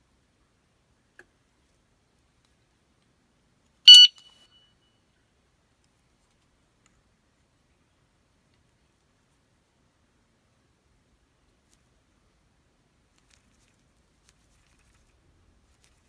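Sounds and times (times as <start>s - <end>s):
short high beep: 3.9s - 4.6s.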